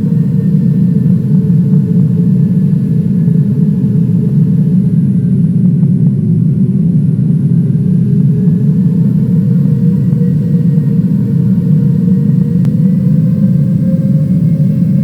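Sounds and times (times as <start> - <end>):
jet engine and airflow noise in cabin: 0.0 - 15.0.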